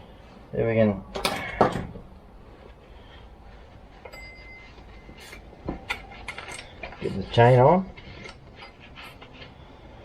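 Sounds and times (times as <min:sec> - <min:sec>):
faint high-pitched beep: 0:04.1 - 0:05.2.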